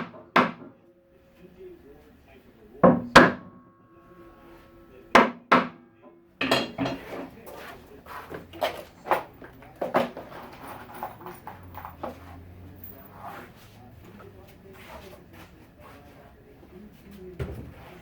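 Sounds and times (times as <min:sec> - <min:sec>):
knocks and clatter of wood and metal: 0:06.4 - 0:07.4, 0:08.3 - 0:13.1.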